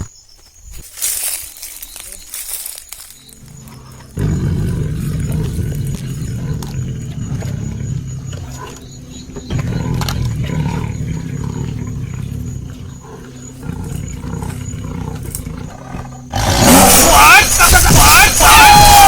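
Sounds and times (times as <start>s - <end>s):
jaguar roar through a small speaker: 4.2s - 8.6s, 13.6s - 19.0s.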